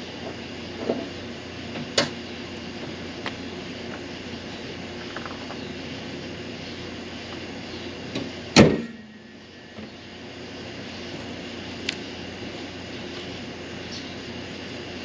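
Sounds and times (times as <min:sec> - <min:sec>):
low hum: 0:00.0 - 0:15.0
car body panel slamming: 0:08.6 - 0:08.9.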